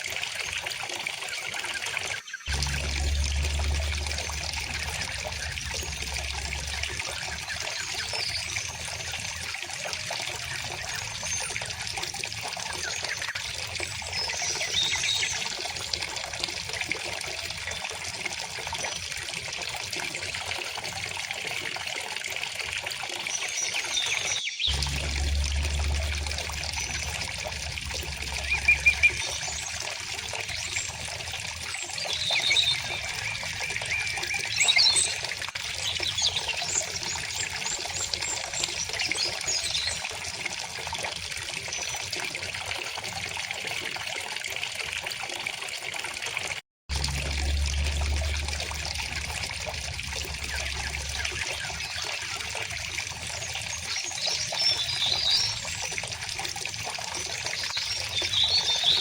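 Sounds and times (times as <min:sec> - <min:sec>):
stream trickling: 0:00.0 - 0:59.0
low rumble: 0:02.5 - 0:07.6, 0:24.7 - 0:29.8, 0:46.9 - 0:52.2
birds chirping: 0:23.4 - 0:35.2.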